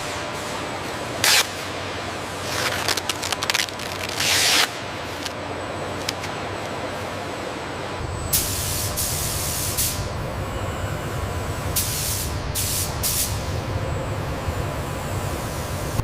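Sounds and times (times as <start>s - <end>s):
low machinery rumble: 4.9s - 16.0s
air hissing bursts: 8.3s - 16.0s.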